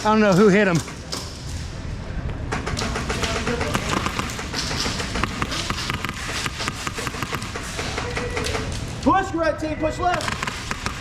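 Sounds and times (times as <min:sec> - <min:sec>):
airsoft guns firing: 0:02.6 - 0:08.7, 0:10.1 - 0:11.0.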